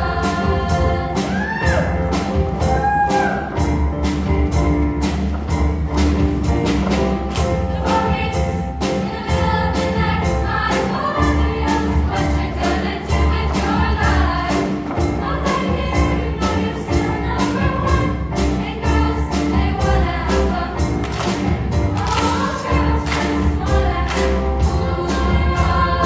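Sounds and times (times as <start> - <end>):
choir singing: 0.0 - 2.0, 7.7 - 26.0
accompaniment with strong bass: 0.0 - 26.0
steady drum beat: 0.0 - 26.0.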